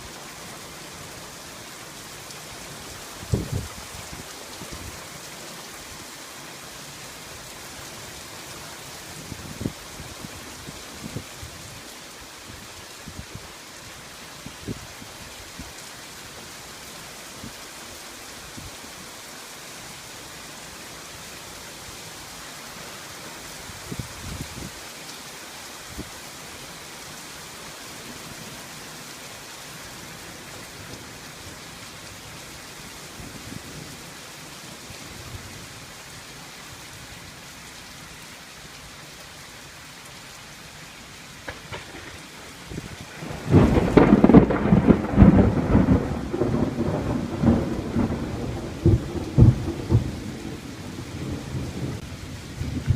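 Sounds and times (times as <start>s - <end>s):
steady rain falling: 0.0s - 52.9s
faint low thunder rumbles: 41.4s - 52.9s
loud close thunderclap: 41.5s - 50.6s.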